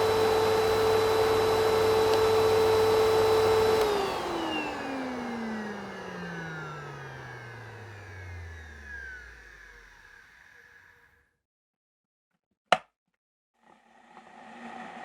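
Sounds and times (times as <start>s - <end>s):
electric motor whine spinning down: 0.0s - 11.2s.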